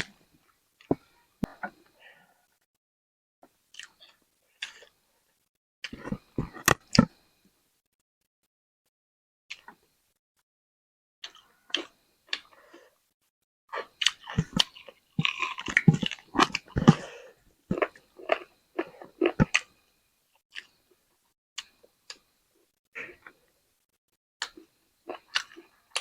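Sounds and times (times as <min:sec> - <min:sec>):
mouth chewing food: 0:03.7 - 0:04.9, 0:05.8 - 0:07.1, 0:11.2 - 0:12.8, 0:13.7 - 0:19.7, 0:20.5 - 0:20.8, 0:24.4 - 0:26.0.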